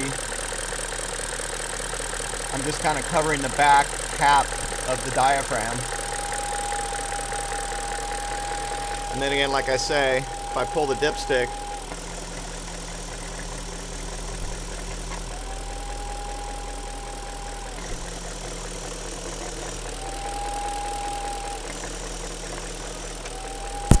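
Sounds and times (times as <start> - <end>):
car engine idling: 0.0 - 24.0
high whistle: 5.4 - 12.0, 20.0 - 21.7, 23.4 - 24.0.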